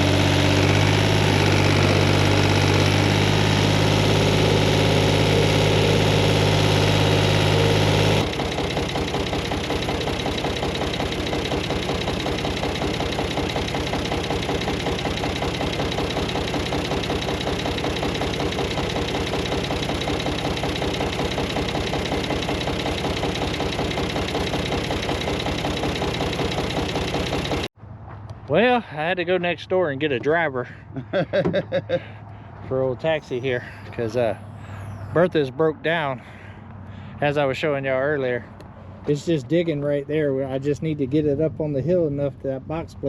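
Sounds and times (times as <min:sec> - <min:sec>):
tractor engine running: 0:00.0 - 0:27.7, 0:33.1 - 0:35.2.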